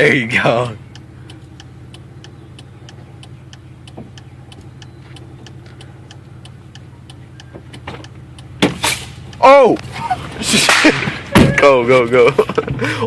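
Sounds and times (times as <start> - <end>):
car engine idling: 0.0 - 13.0
light ticking: 0.1 - 9.9.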